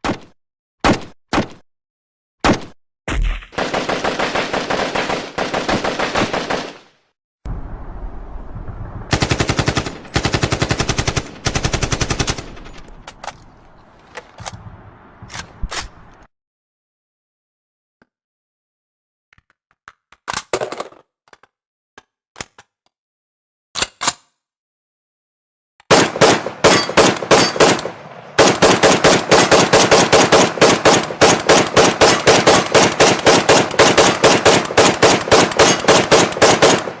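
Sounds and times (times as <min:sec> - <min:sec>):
automatic gunfire: 0:03.5 - 0:06.9, 0:09.1 - 0:12.8, 0:25.9 - 0:37.0.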